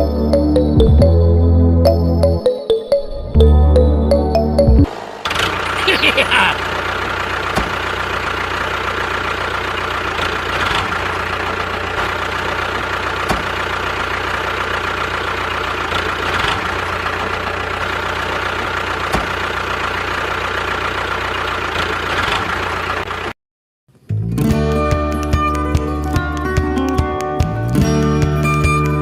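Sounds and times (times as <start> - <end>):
plucked-string music: 0.0 - 4.9, 24.1 - 29.0.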